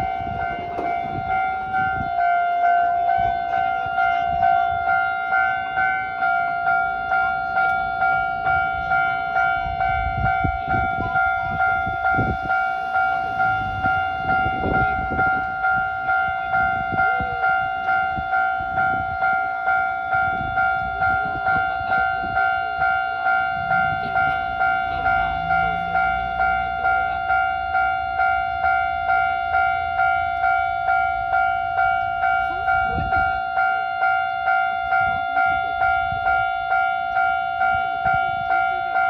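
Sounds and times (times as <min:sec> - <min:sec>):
low rumble: 0:00.0 - 0:04.5, 0:07.0 - 0:17.0, 0:20.9 - 0:27.5
level crossing bell ringing: 0:00.0 - 0:39.0.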